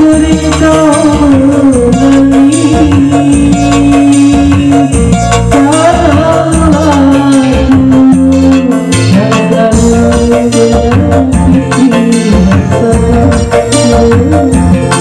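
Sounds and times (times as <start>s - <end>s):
loud song with heavy bass: 0.0s - 15.0s.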